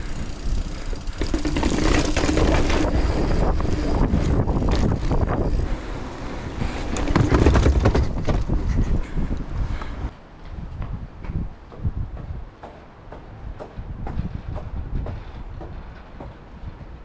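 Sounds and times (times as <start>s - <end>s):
clicks and rattles: 0.0s - 3.1s
wheels rolling rumble: 0.0s - 11.4s
wind buffeting microphone: 0.0s - 17.0s.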